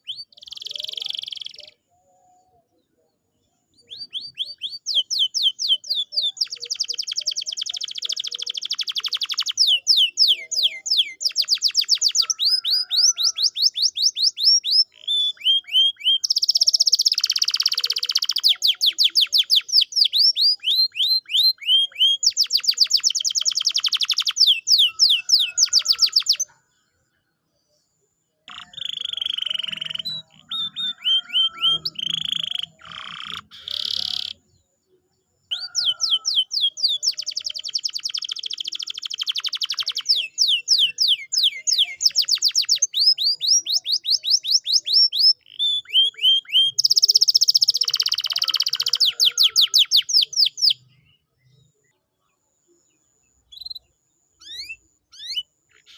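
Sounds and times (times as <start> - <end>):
canary singing: 0.0 - 26.7, 28.4 - 51.9, 53.0 - 55.9.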